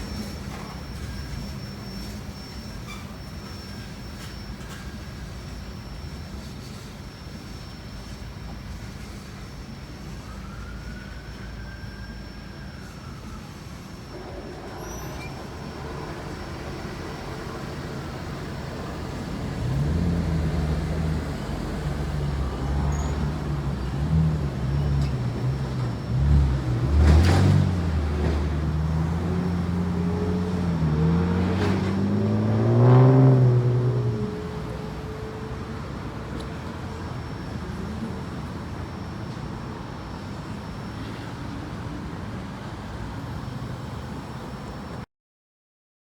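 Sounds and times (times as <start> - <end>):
vehicle engine running: 14.2 - 38.6.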